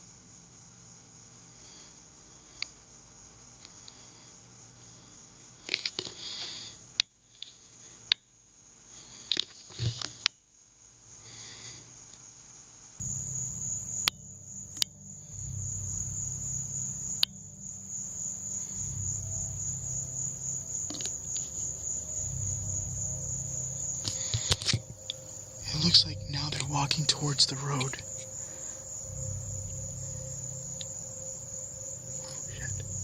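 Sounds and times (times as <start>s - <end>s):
crickets trilling: 13.0s - 33.0s
low steady rumble: 13.0s - 33.0s.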